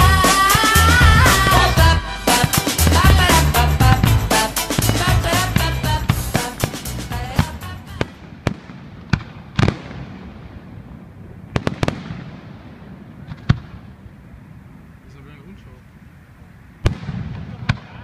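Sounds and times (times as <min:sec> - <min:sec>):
music: 0:00.0 - 0:08.0
fireworks bangs: 0:00.0 - 0:14.1, 0:16.8 - 0:18.0.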